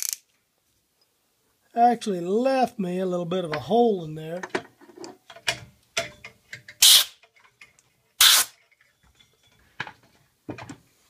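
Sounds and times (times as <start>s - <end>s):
tools and wood knocking: 4.4s - 7.9s, 8.6s - 10.8s.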